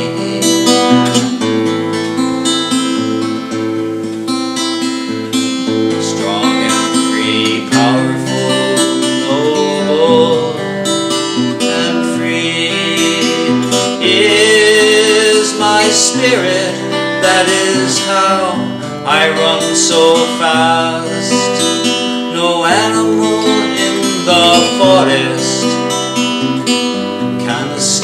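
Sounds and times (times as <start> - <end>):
acoustic guitar strumming and picking: 0.0 - 28.0.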